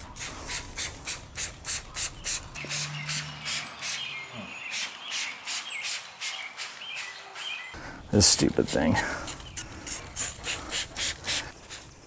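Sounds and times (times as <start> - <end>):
faint bird chirps: 1.4 - 7.8.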